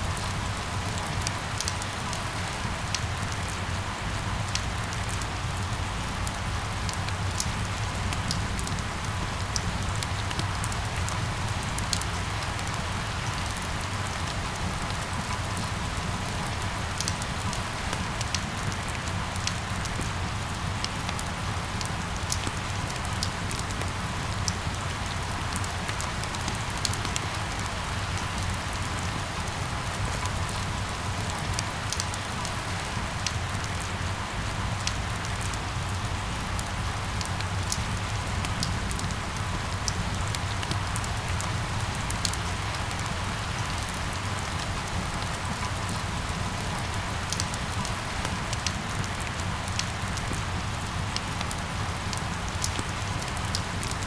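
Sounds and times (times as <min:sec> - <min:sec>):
rain hiss: 0:00.0 - 0:54.0.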